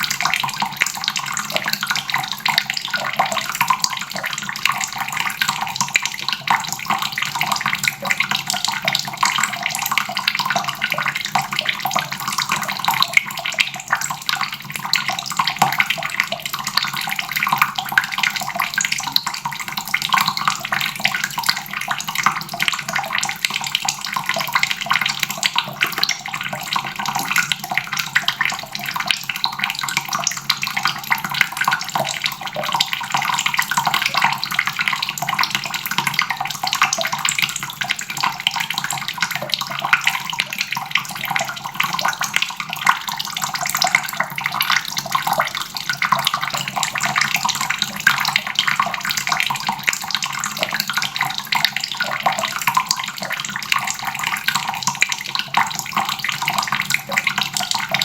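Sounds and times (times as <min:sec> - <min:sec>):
faucet water splashing into basin: 0:00.0 - 0:58.0.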